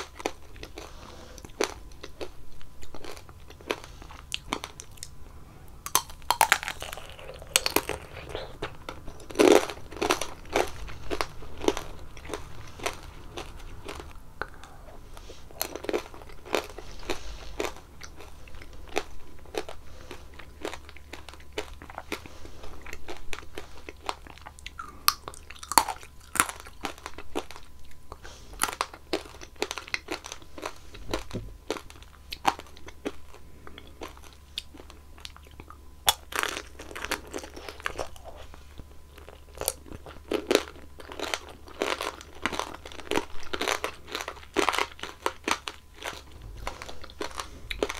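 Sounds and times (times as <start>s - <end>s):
chewing strawberries: 0.0s - 47.9s
candy shell cracking between teeth: 5.8s - 13.0s.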